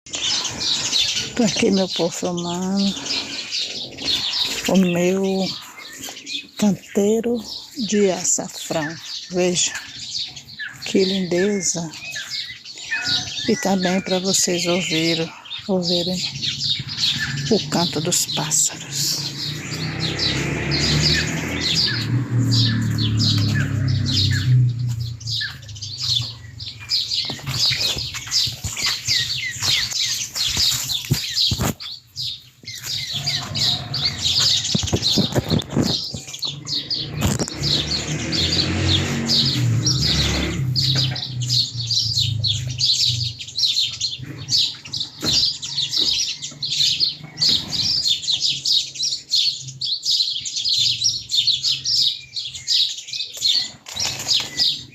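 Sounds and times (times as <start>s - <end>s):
small birds chirping: 0.1s - 54.9s
low rumble: 16.2s - 28.7s.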